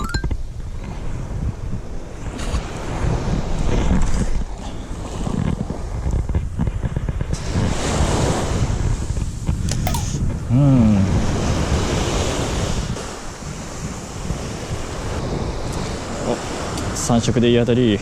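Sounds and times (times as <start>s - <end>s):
short falling tone: 9.9s - 10.2s.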